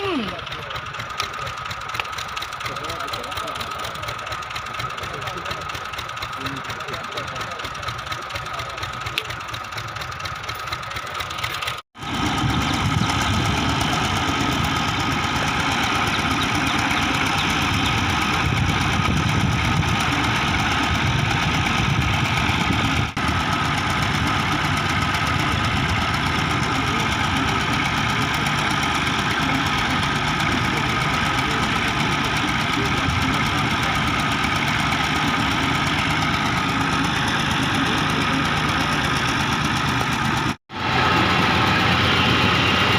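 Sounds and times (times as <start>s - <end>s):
drilling machine engine running: 0.0s - 42.9s
constant high whine: 12.0s - 42.9s.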